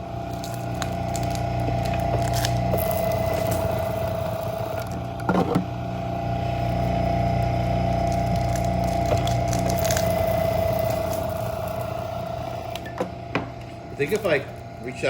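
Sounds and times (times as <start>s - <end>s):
insulation crunching: 0.0s - 15.0s
wire-stripping machine humming: 0.0s - 15.0s.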